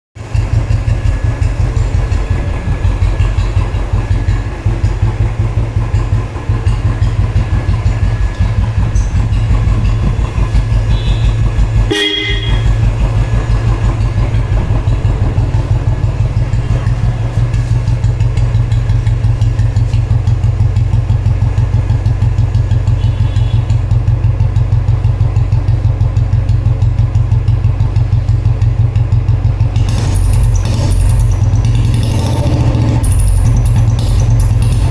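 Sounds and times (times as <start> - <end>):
motorcycle engine idling: 0.2 - 34.9
exhaust whistle tone: 9.0 - 13.9, 22.8 - 24.0.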